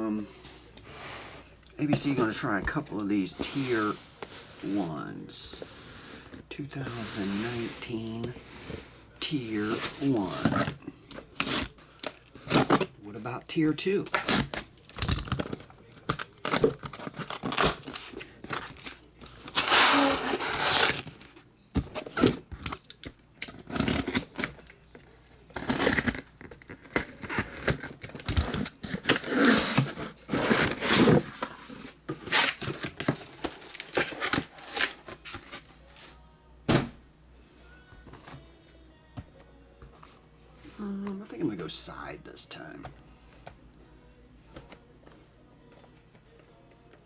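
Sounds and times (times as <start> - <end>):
plastic wrap tearing and crinkling: 9.7 - 12.9, 14.1 - 21.2, 22.0 - 36.0.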